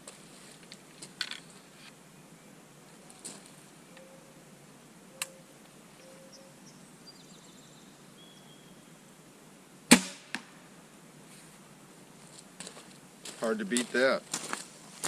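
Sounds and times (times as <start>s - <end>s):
bolt striking target: 9.9s - 10.5s.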